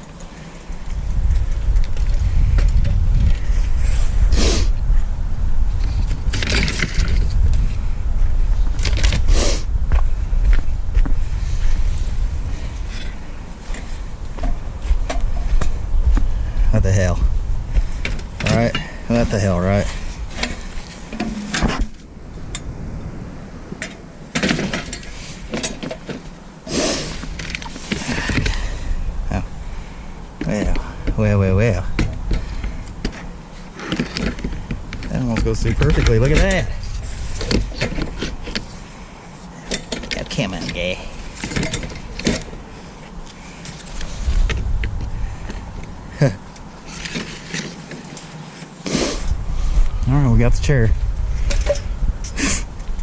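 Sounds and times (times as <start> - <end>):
low rumble: 44.0 - 46.9.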